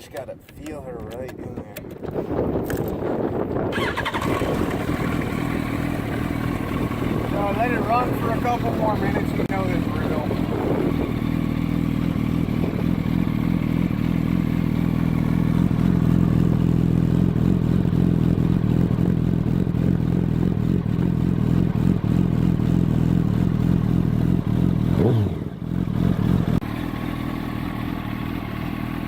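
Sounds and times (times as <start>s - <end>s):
motorcycle engine idling: 3.3s - 29.0s.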